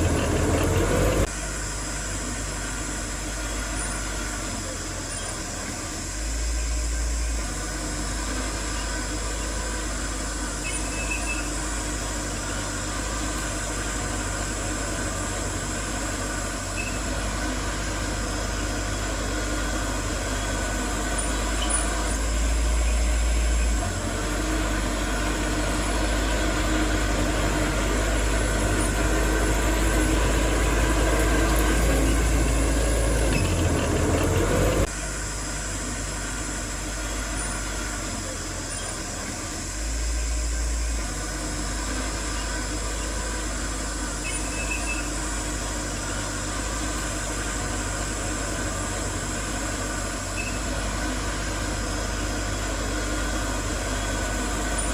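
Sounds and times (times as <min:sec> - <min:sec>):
engine revving: 0:00.0 - 0:01.4, 0:06.0 - 0:35.0
heavy machinery diesel engines: 0:00.0 - 0:54.9.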